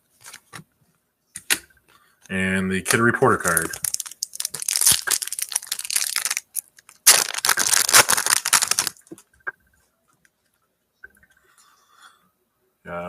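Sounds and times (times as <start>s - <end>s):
foil wrapper tearing and crinkling: 2.9s - 9.1s.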